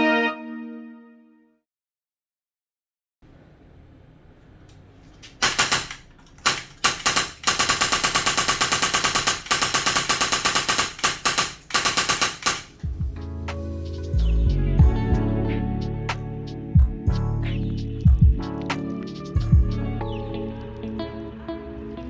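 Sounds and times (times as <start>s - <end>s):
airsoft rifle firing rapidly: 5.4s - 12.8s.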